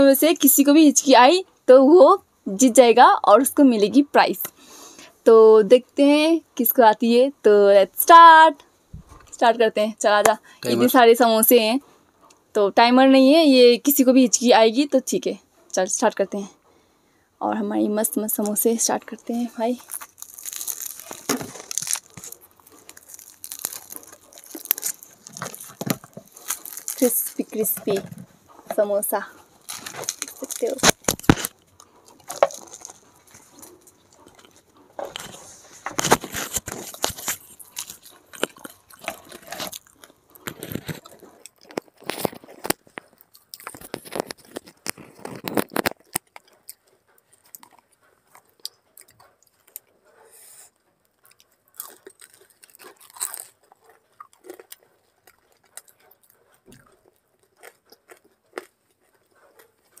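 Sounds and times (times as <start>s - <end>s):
crunchy chewing of fried food: 4.5s - 5.2s, 10.3s - 10.9s, 18.2s - 60.0s.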